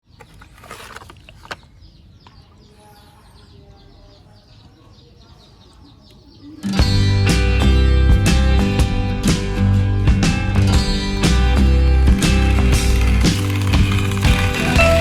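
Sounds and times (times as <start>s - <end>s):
birds chirping faintly: 0.0s - 9.0s
loud music: 6.8s - 15.0s.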